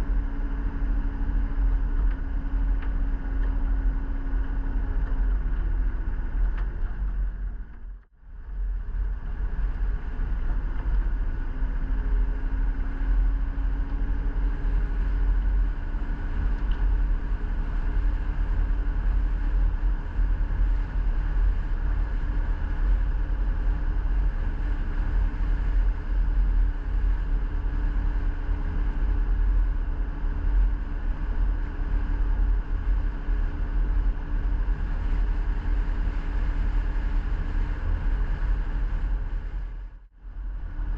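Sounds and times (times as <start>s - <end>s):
vehicle engine and road rumble: 0.0s - 40.9s.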